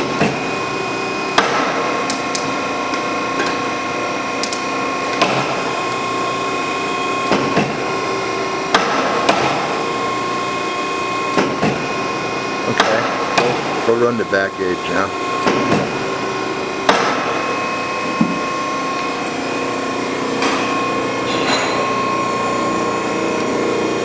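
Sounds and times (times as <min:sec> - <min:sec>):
hydraulic pump whining: 0:00.0 - 0:24.0
sharp mechanical knocks: 0:08.7 - 0:09.7, 0:12.7 - 0:13.8, 0:16.8 - 0:17.4.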